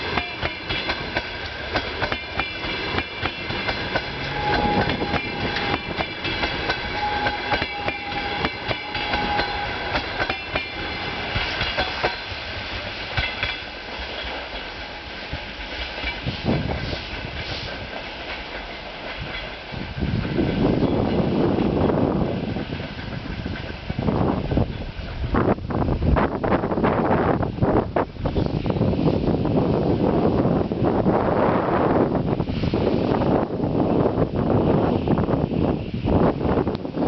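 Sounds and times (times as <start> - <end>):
train wheels clacking over rail joints: 0.0 - 25.2
train rumble: 0.0 - 37.0.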